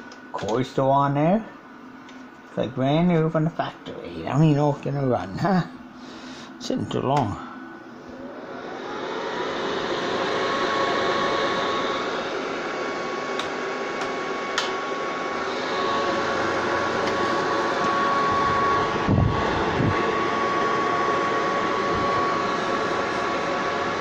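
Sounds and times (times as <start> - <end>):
hair dryer blower whining: 6.2 - 24.0.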